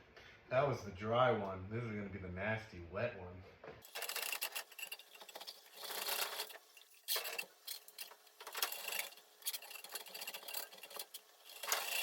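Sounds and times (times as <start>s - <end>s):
drain snake cable clicking and rattling: 3.9s - 12.0s.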